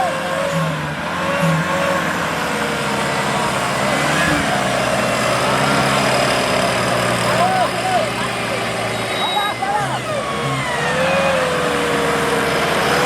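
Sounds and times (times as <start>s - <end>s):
car engine running: 0.0s - 13.0s
faint voices: 0.0s - 13.0s.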